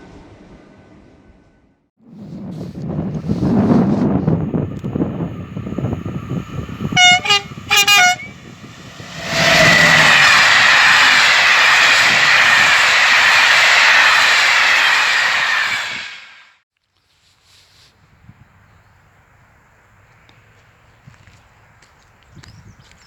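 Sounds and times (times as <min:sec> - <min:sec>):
train passing at speed: 0:00.0 - 0:16.6
train horn blasts: 0:06.6 - 0:12.3.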